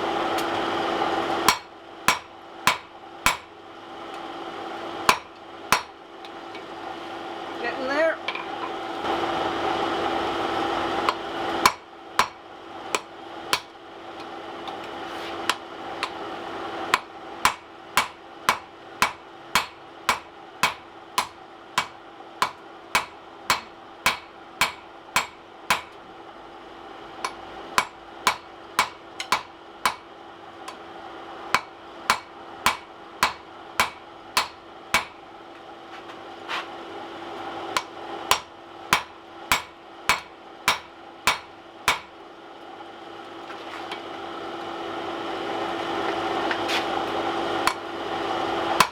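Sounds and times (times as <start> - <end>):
hammer striking steel on anvil: 1.5 - 3.5, 5.1 - 6.0, 11.1 - 14.8, 16.9 - 26.0, 27.2 - 30.1, 31.5 - 35.2, 37.7 - 42.1, 47.6 - 47.8.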